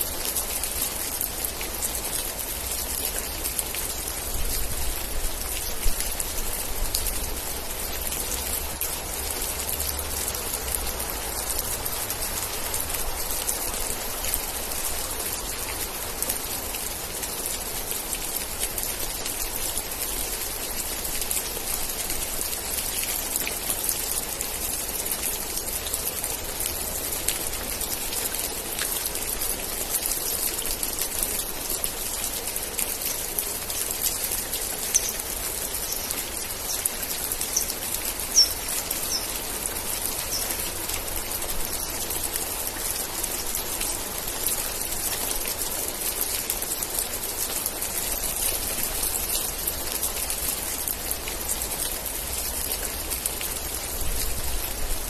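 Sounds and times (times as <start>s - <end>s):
steady rain hiss: 0.0s - 55.0s
raindrops ticking: 25.2s - 45.7s.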